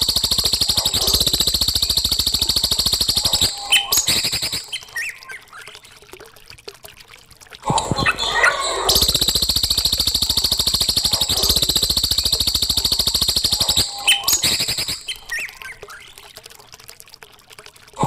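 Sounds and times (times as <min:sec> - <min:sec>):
songbird buzzy trill: 0:00.0 - 0:05.4, 0:08.0 - 0:15.8
bird chirps: 0:00.0 - 0:05.5, 0:08.0 - 0:15.8.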